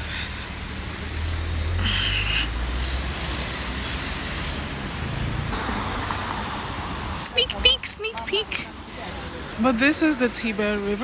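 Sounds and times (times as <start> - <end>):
vehicle passing with low rumble: 0.0 - 7.2.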